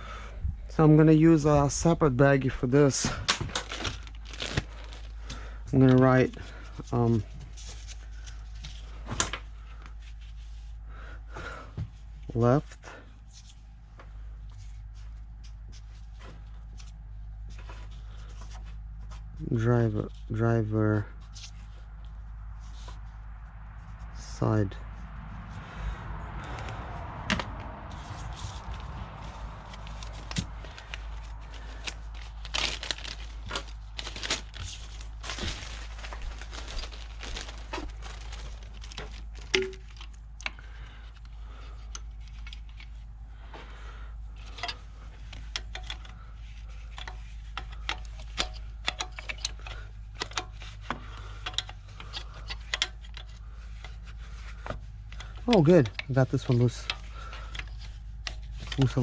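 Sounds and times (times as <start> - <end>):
low steady hum: 0.0 - 59.0
plastic bag rustling: 1.3 - 10.7, 28.0 - 42.8
wrenches clinking on metal: 46.9 - 54.0.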